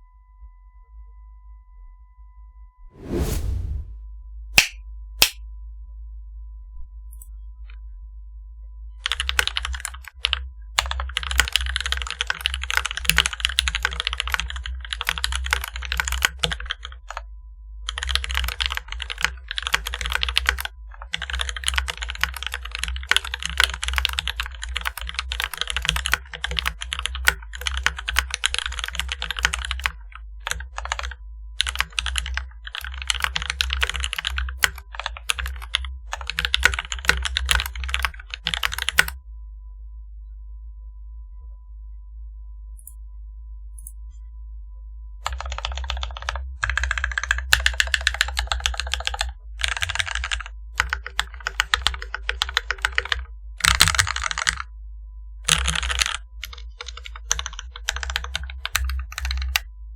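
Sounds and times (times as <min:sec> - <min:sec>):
steady low hum: 0:02.9 - 0:59.9
fast typing on mechanical keyboard: 0:09.0 - 0:17.2, 0:17.9 - 0:39.2, 0:45.2 - 0:54.7, 0:55.4 - 0:59.6.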